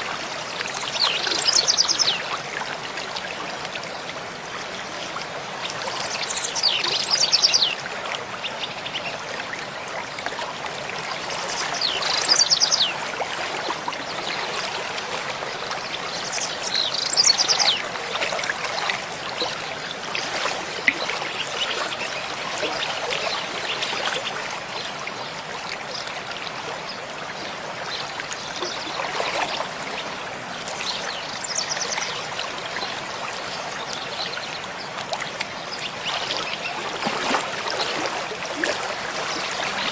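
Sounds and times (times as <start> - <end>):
stream running: 0.0 - 39.9
songbird singing: 0.7 - 2.3, 6.0 - 7.8, 11.5 - 13.0, 15.8 - 17.9, 27.9 - 32.2.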